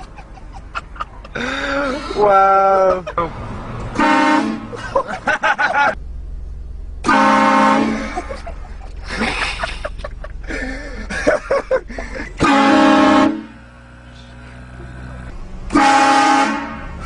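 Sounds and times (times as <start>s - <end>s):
train horn blasting: 4.0s - 4.7s, 7.0s - 8.1s, 12.4s - 14.0s, 15.7s - 17.0s.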